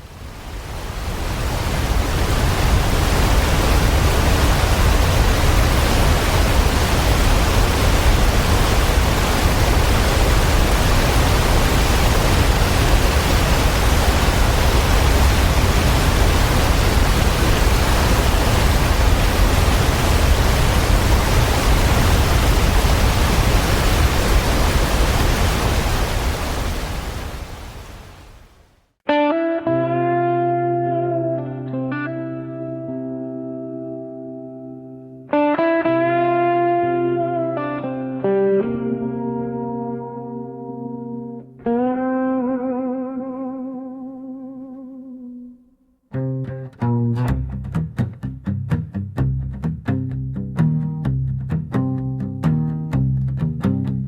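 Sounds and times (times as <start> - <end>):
rushing running water: 0.0 - 28.6.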